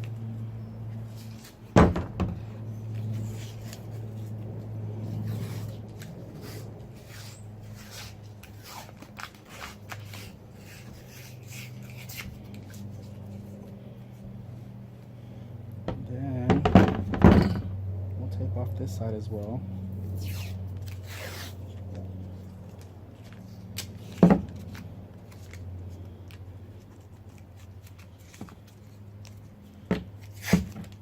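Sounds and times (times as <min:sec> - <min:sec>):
steady low hum: 0:00.0 - 0:31.0
tape being pulled and torn: 0:01.1 - 0:01.8, 0:02.8 - 0:13.6, 0:20.0 - 0:29.5, 0:30.1 - 0:31.0.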